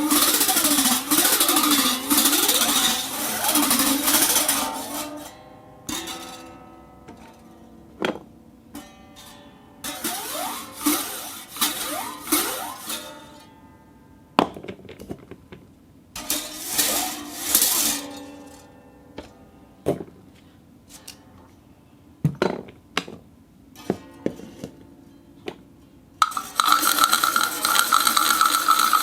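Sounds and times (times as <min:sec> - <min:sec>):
ball clinking against cup: 0:26.2 - 0:29.0
ball swirling inside a cup: 0:26.2 - 0:29.0.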